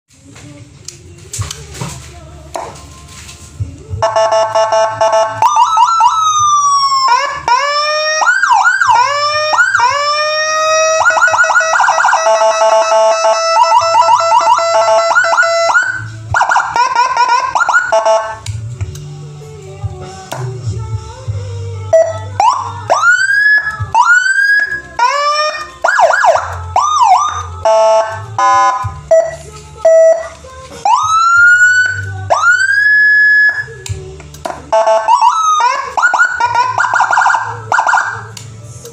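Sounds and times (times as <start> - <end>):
electronic siren wailing and yelping: 4.0 - 18.5, 21.9 - 33.8, 34.7 - 38.3.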